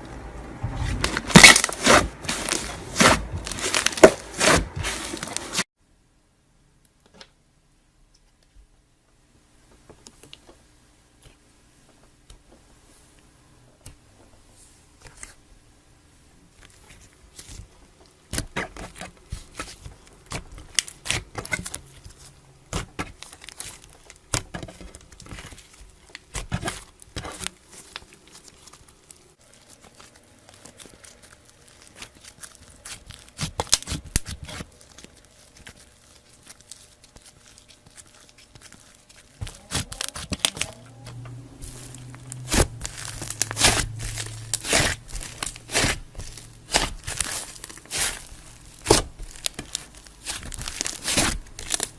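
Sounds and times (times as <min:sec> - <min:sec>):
slime crackling and popping: 0:00.9 - 0:05.6, 0:16.8 - 0:51.9.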